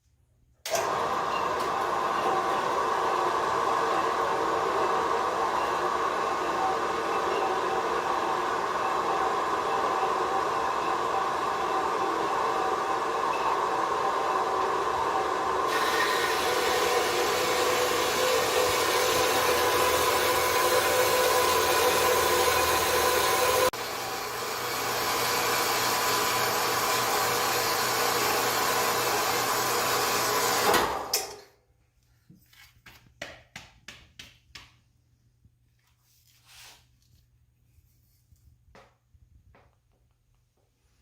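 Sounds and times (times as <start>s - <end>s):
bandsaw cutting steel: 3.8s - 31.4s.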